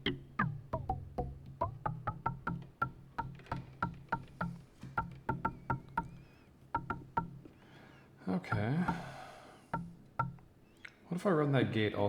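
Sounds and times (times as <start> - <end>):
pitched synth clicks: 0.0 - 7.5, 8.5 - 10.5.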